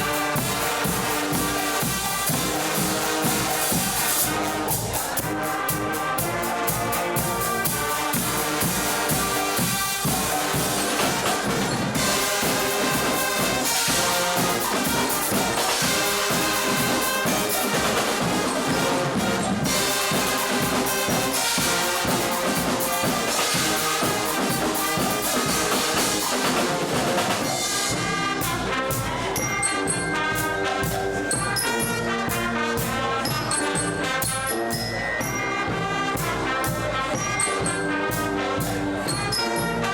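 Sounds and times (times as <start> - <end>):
loud brass band: 0.0 - 39.9
marching drums: 0.0 - 39.9
cymbals crashing: 8.2 - 32.4.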